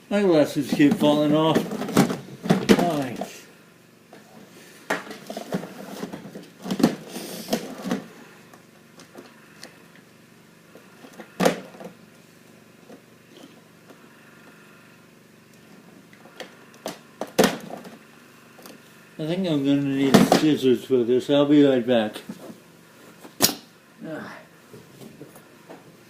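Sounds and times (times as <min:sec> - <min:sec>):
plastic parts knocking and clattering: 0:00.6 - 0:03.4, 0:04.9 - 0:08.1, 0:11.1 - 0:12.0, 0:16.3 - 0:18.0, 0:20.0 - 0:20.6.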